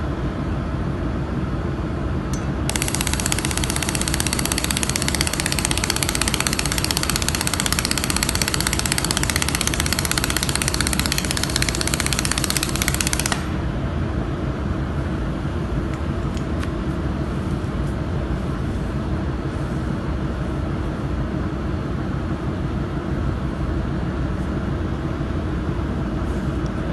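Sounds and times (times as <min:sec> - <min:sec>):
low machine hum: 0:00.0 - 0:26.9
laser welder crackling: 0:02.7 - 0:13.6.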